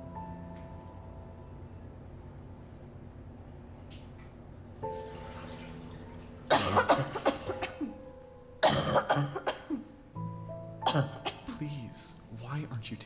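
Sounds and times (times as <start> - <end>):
person coughing: 6.5 - 8.0, 8.6 - 9.9, 10.8 - 11.5.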